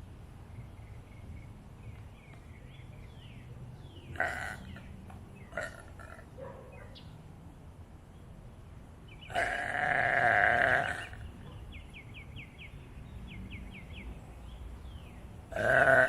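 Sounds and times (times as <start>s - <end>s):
person burping: 4.2s - 4.6s.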